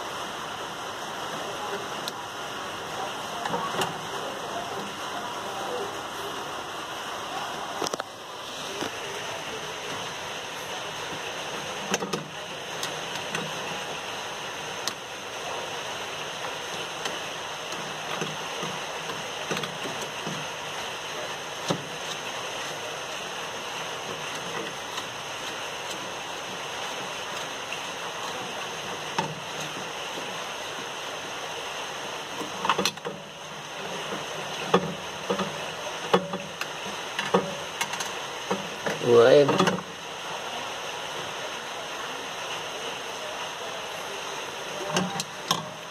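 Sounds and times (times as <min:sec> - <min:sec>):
water rushing in washing machine: 0:00.0 - 0:45.9
light clicks and knocks: 0:34.0 - 0:39.9.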